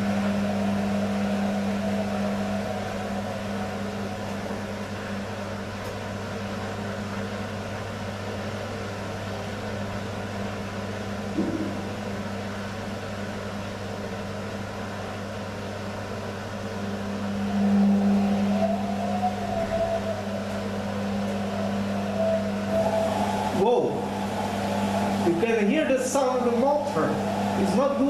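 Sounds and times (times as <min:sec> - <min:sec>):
washing machine humming: 0:00.0 - 0:28.0
short knock: 0:11.4 - 0:11.9.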